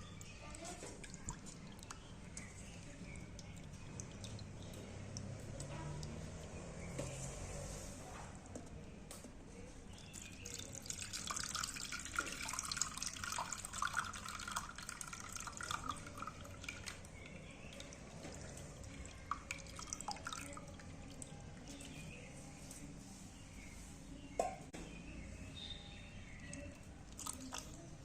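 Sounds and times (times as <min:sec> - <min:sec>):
small splashes and clicks: 0:00.0 - 0:07.5, 0:08.2 - 0:22.2, 0:26.4 - 0:28.0
water running and dripping: 0:00.0 - 0:07.7, 0:10.0 - 0:22.4, 0:26.3 - 0:28.0.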